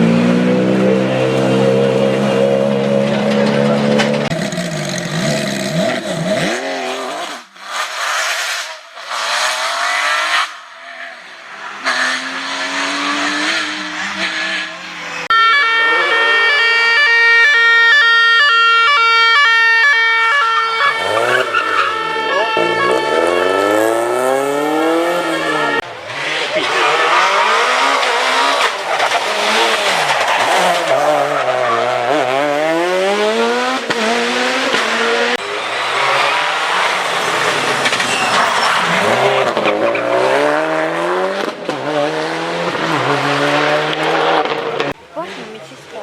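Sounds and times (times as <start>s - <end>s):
rally car engines passing: 0.0s - 18.9s, 19.7s - 46.0s
held tones stepping in pitch: 15.3s - 25.8s.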